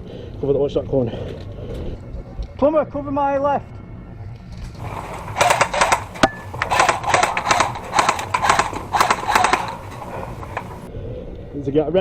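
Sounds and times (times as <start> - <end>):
airsoft rifles firing bursts: 4.8 - 10.9.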